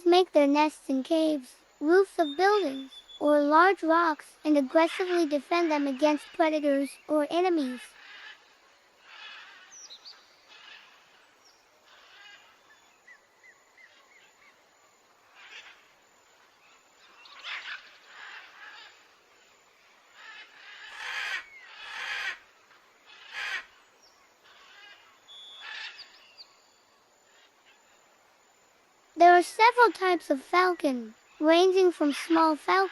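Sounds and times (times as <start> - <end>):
bird calls and chirps: 2.0 - 3.5, 4.6 - 14.6, 15.3 - 28.0
harsh bird calls: 2.1 - 14.6, 15.4 - 19.2, 20.2 - 26.7.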